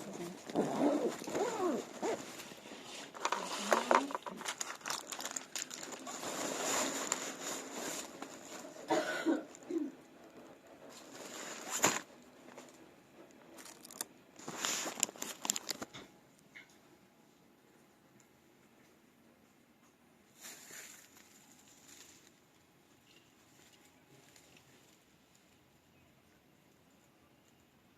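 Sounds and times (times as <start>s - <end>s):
rustling and crinkling: 0.0s - 16.7s, 20.3s - 25.7s.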